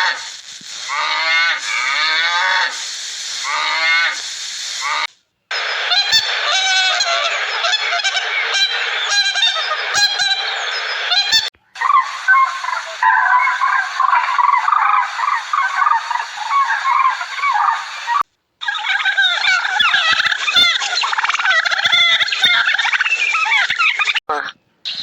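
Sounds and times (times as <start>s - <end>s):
birds chattering: 0.0s - 25.0s
flock of birds calling: 0.0s - 25.0s.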